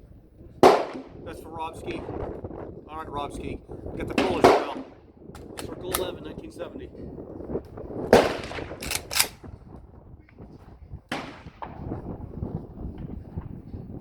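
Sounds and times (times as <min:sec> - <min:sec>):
wind buffeting microphone: 0:00.0 - 0:14.0
rifle shot: 0:00.6 - 0:01.2, 0:04.2 - 0:06.2, 0:08.1 - 0:09.5, 0:11.1 - 0:12.0.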